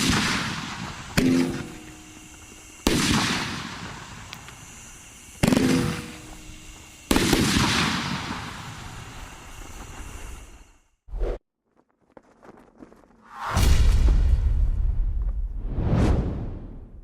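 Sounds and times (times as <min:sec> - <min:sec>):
loud firework aerial breaks: 0:00.0 - 0:01.3, 0:02.8 - 0:04.8, 0:07.1 - 0:09.3, 0:13.2 - 0:14.3, 0:15.3 - 0:17.0.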